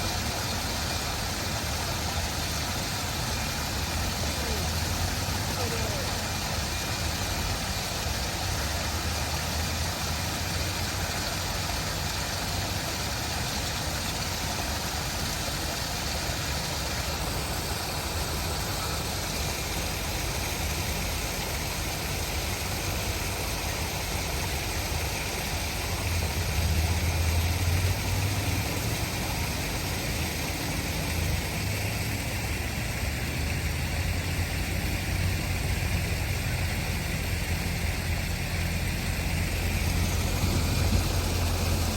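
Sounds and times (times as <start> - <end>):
water rushing: 0.0 - 41.9
deep rumble: 35.4 - 41.9.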